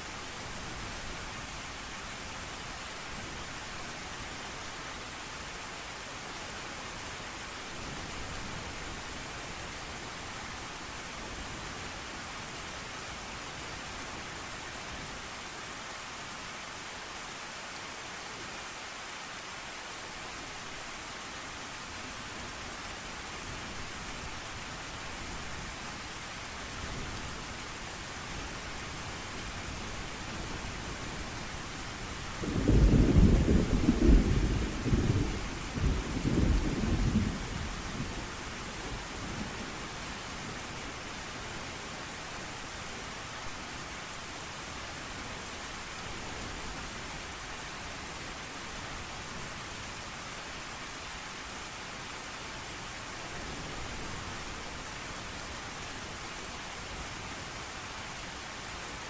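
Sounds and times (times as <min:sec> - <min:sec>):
rain falling: 0:00.0 - 0:59.0
thunder rumbling: 0:32.4 - 0:38.1.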